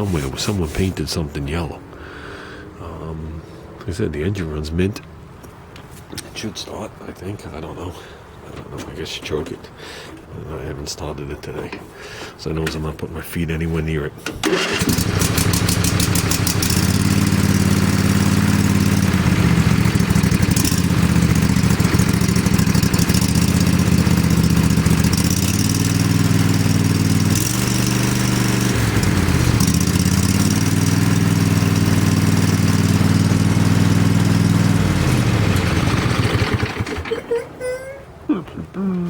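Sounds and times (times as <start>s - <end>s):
mower engine starting and running: 14.2s - 37.3s.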